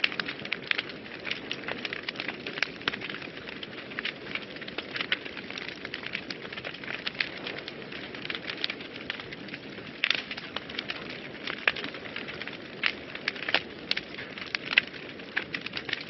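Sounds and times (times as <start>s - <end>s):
wood fire crackling and popping: 0.0s - 16.0s
low hiss of flames: 6.3s - 15.8s.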